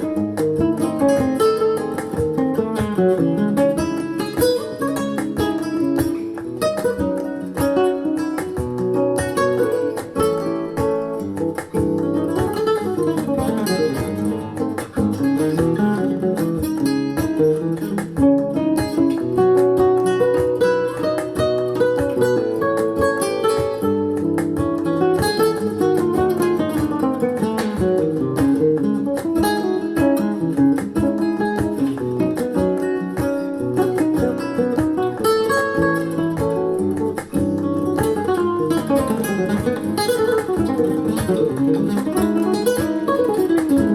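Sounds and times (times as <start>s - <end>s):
acoustic guitar through loudspeaker: 0.0s - 43.9s.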